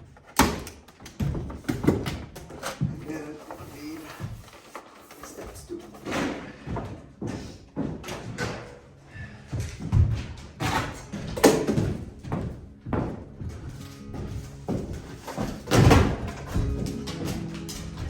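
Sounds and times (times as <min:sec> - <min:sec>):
knocks and thuds of stapling: 0:00.2 - 0:02.5.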